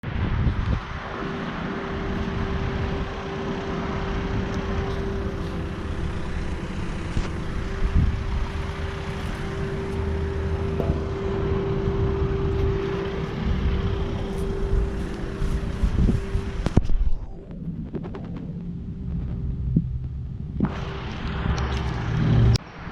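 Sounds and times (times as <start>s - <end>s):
condenser fan rushing: 0.2s - 16.8s.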